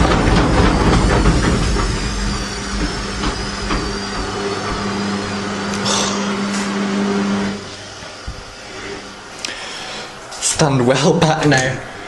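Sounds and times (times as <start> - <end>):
rapid knocking: 0.0 - 5.2
washing machine running: 0.0 - 10.3.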